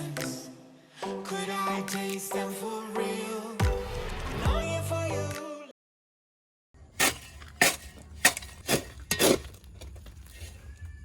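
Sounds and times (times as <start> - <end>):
metal garden tool striking ground: 7.0 - 10.7.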